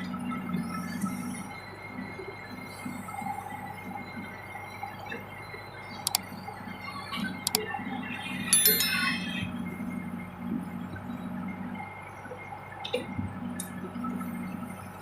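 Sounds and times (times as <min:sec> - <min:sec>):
sharp metallic clinks: 0:08.5 - 0:09.5.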